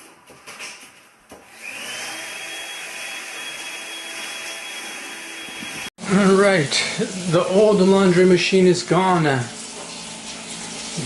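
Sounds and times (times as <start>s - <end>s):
electric motor whining: 1.5s - 5.9s.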